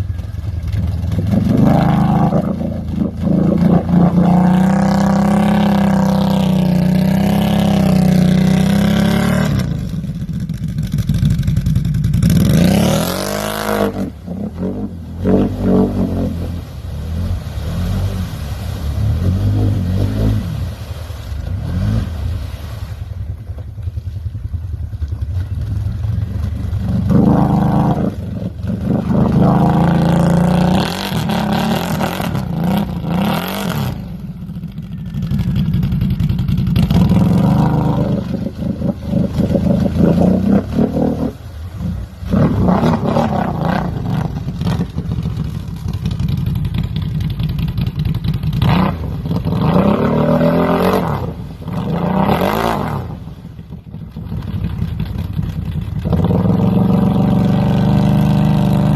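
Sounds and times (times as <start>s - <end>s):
off-road engines revving: 0.0s - 22.9s, 25.4s - 58.9s
steady engine drone: 0.0s - 58.9s.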